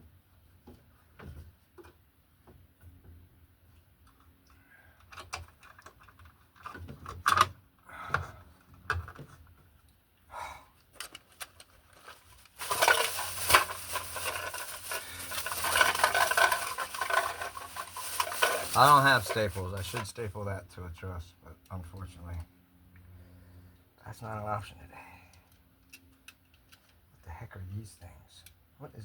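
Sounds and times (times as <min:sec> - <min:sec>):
crinkling rustling noise: 0:11.0 - 0:20.2.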